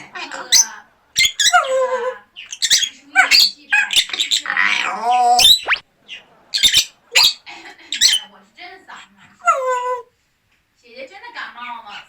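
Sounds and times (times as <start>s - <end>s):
parrot wavering woo calls: 0.5s - 8.2s
parrot rising squeak: 0.6s - 1.7s, 2.4s - 5.8s, 6.6s - 7.4s, 8.0s - 8.2s.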